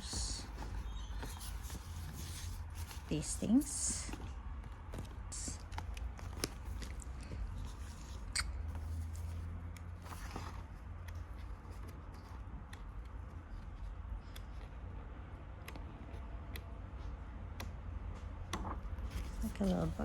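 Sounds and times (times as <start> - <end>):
paper rustling: 0.0 - 13.8, 18.5 - 20.0.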